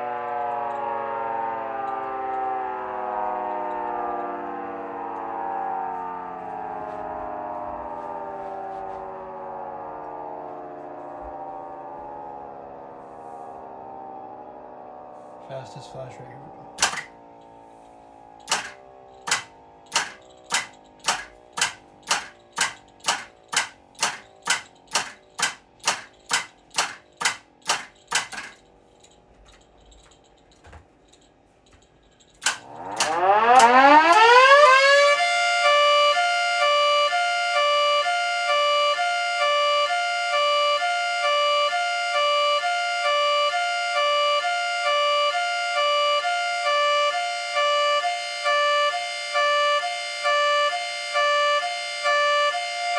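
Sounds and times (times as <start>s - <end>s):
model siren hi-lo: 0.0s - 30.5s, 31.1s - 52.9s
sharp clicks: 16.8s - 17.2s, 18.4s - 34.8s.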